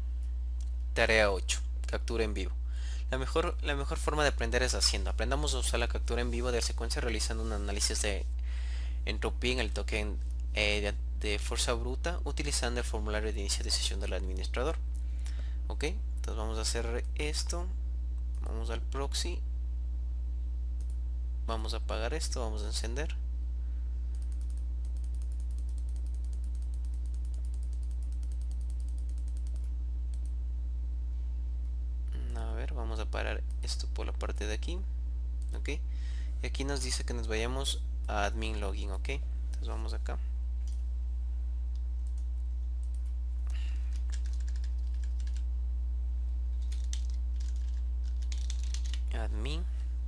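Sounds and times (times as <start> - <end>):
low electrical hum: 0.0 - 50.0
typing on a keyboard: 43.9 - 45.4, 46.6 - 49.0.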